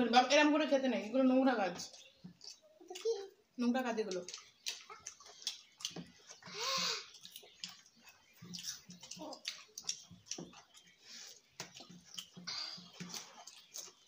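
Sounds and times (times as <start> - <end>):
chewing: 1.8 - 3.3, 4.1 - 14.0
wet mouth clicks and smacks: 4.1 - 14.0.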